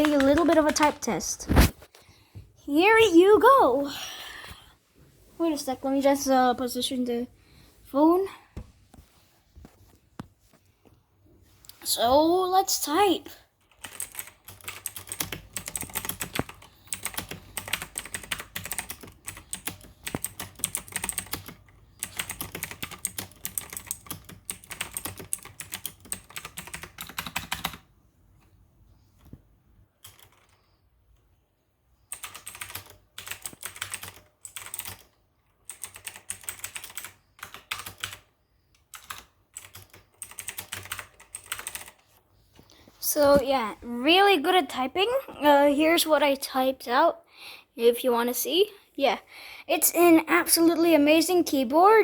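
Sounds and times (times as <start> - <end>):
clicky mechanical keyboard typing: 0.0 - 1.2, 13.6 - 27.9, 30.0 - 30.7, 32.1 - 42.0.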